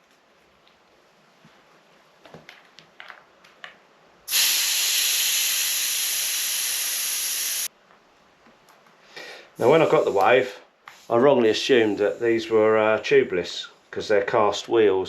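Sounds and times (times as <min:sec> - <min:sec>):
air hissing out of tyre valve: 0:04.3 - 0:07.7.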